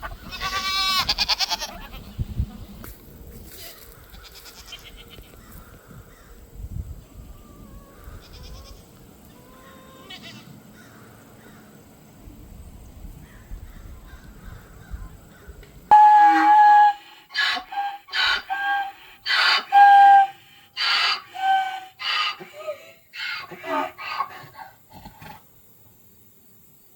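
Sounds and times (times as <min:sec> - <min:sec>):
faint goat bleats: 0:00.2 - 0:02.7, 0:03.6 - 0:05.4, 0:07.0 - 0:10.5
short flat-pitched animal calls: 0:15.9 - 0:24.4.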